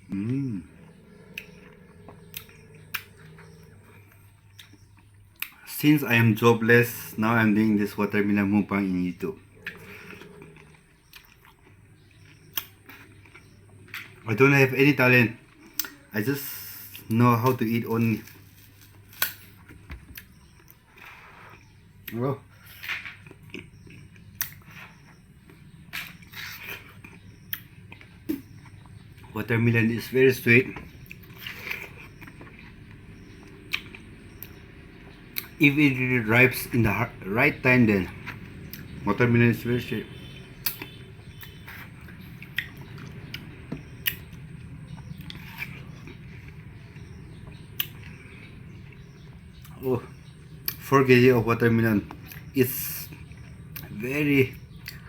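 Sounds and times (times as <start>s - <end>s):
steady low hum: 0.0s - 55.0s
wet chewing: 0.2s - 5.6s, 9.5s - 14.2s, 30.9s - 35.6s, 40.1s - 50.9s
biting and chewing watermelon: 16.9s - 36.9s, 37.7s - 50.9s.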